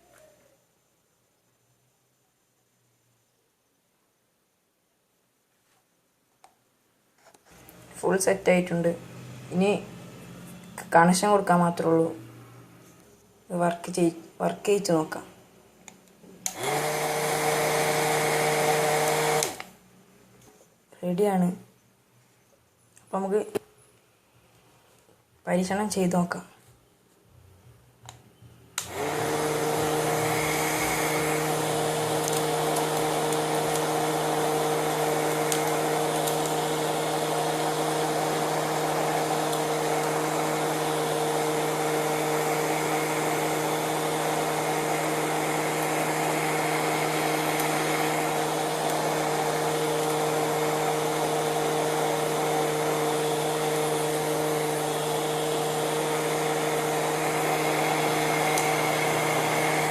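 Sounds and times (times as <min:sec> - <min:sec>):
small motor humming: 0:28.8 - 0:59.9.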